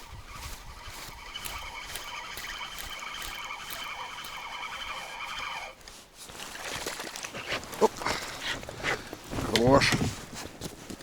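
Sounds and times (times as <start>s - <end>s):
fishing reel whine: 0.0s - 5.8s.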